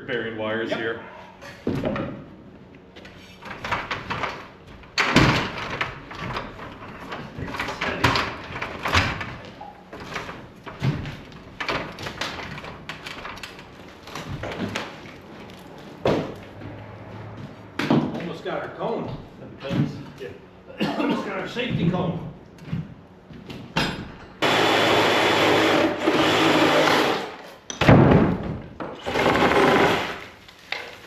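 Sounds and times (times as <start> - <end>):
demolition knocks and bangs on wood: 3.4 - 13.4, 27.8 - 30.2.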